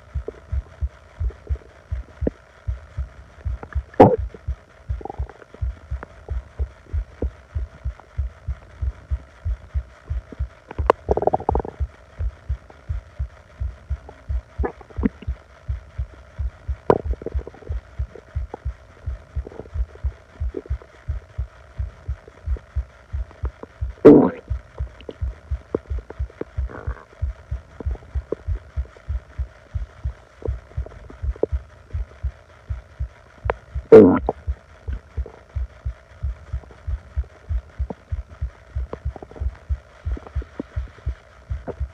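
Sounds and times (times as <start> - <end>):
faint steady hum: 0.0 - 41.9
stomach growling: 0.0 - 41.9
stomach gurgles: 0.0 - 41.9.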